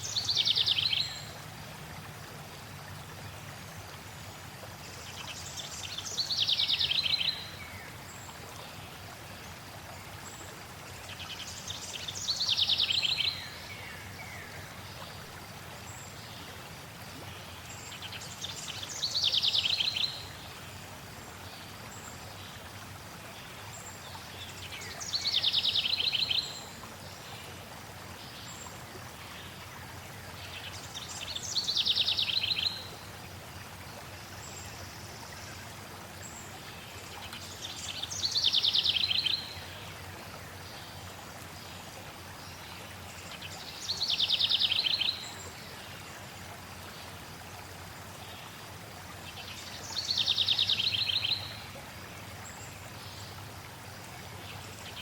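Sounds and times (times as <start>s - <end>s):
flowing water rushing: 0.0s - 55.0s.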